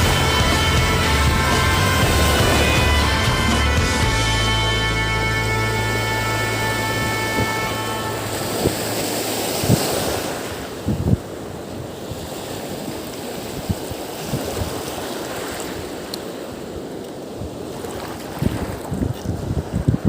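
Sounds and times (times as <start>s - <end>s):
water and surf noise: 0.0s - 20.0s
wind buffeting microphone: 6.2s - 20.0s.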